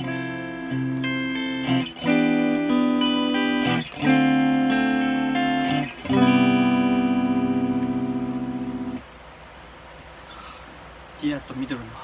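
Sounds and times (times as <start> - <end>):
electric guitar strummed chords: 0.0 - 9.0.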